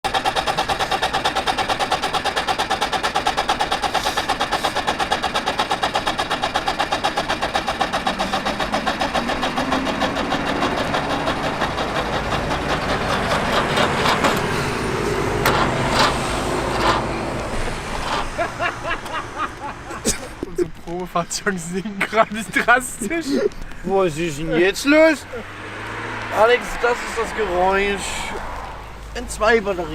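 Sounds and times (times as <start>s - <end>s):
starter motor cranking engine: 0.0s - 21.1s.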